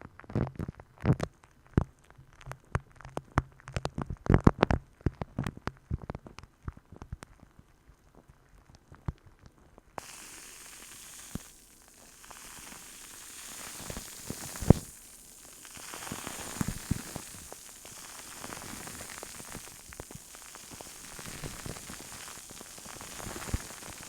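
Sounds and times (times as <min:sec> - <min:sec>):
crackly hissing rub: 0:10.0 - 0:24.0.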